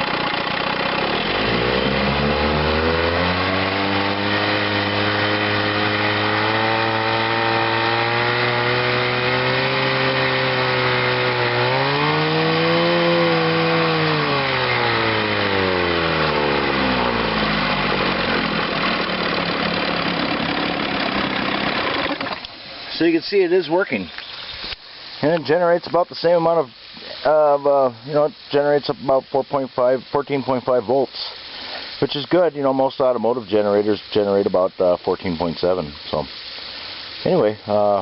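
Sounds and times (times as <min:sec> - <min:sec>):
outboard motor running: 0:00.0 - 0:23.2.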